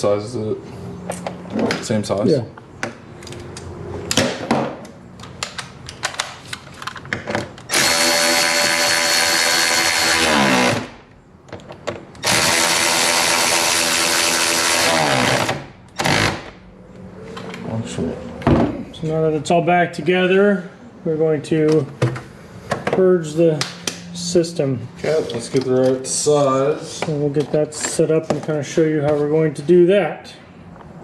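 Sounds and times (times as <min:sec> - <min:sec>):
tool handling clicks and knocks: 0:02.8 - 0:07.7, 0:11.4 - 0:12.2
power drill driving screws: 0:07.7 - 0:11.0, 0:12.2 - 0:16.5.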